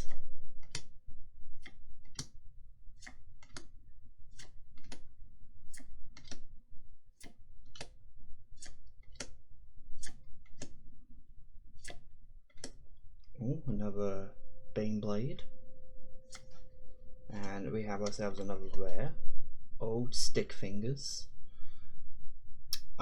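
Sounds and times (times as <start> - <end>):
trading cards flicking clicks: 0.0 - 0.9, 4.3 - 5.1, 5.7 - 6.5, 7.2 - 8.0, 8.6 - 9.4, 10.0 - 10.8, 11.8 - 12.8, 16.3 - 16.6.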